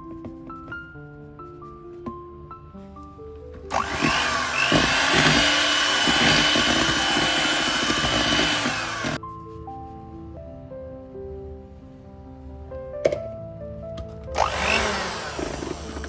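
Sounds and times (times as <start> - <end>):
soft background music: 0.0 - 16.0
electric hand mixer whine: 3.7 - 9.2, 14.4 - 16.0.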